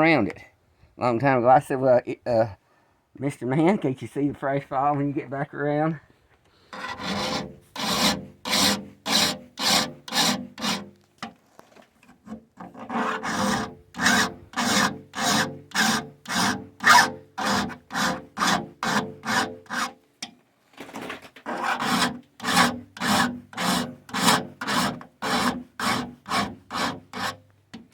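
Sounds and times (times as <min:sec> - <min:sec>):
file rasping on saw blade: 0:06.7 - 0:10.9, 0:12.3 - 0:20.0, 0:21.5 - 0:27.4.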